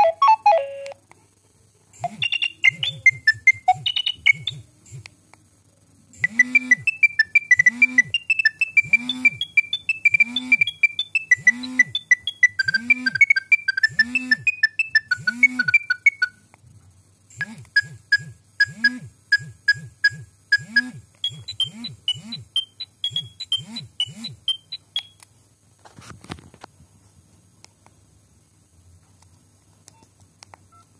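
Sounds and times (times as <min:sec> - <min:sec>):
synthesized ringtone melody: 0:00.0 - 0:00.9, 0:02.1 - 0:04.6, 0:06.3 - 0:16.3.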